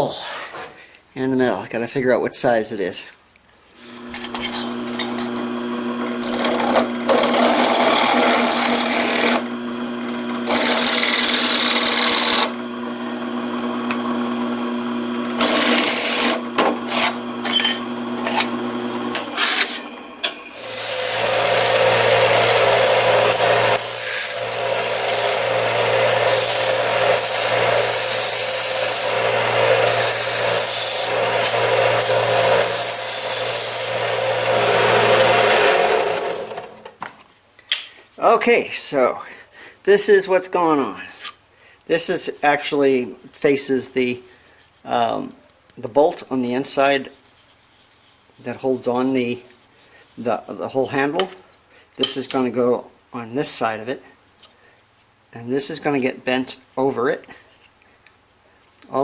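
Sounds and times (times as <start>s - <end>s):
power tool cutting metal: 4.0s - 12.7s, 15.0s - 36.8s.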